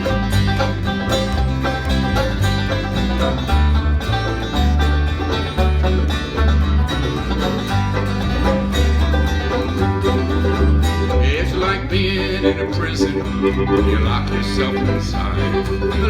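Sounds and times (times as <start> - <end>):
plucked strings: 0.0 - 16.0
rhythmic bass line: 0.0 - 16.0.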